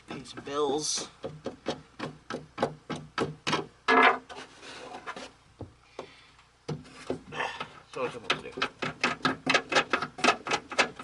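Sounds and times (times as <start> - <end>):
plastic rubbing scrape: 3.9 - 5.4
plastic parts clicking and knocking: 7.6 - 11.0.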